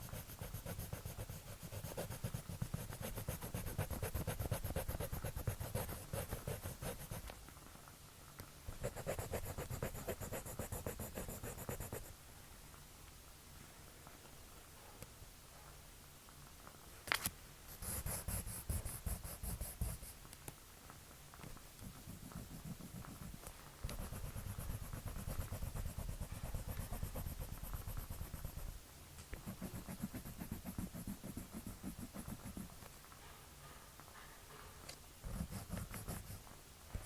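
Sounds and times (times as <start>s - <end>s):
pencil scratching on paper: 0.0s - 7.3s, 8.7s - 12.1s, 17.7s - 20.2s, 21.8s - 28.7s, 29.4s - 32.8s, 35.2s - 36.4s.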